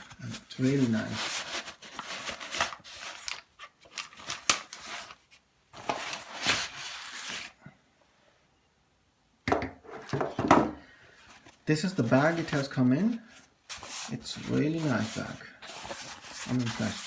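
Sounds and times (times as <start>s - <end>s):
fabric bag rustling: 11.2s - 17.0s.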